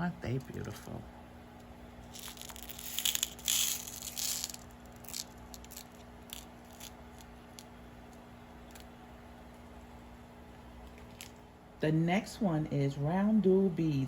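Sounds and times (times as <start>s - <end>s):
plastic bag crinkling: 2.1s - 7.3s
beads clicking: 2.1s - 8.9s.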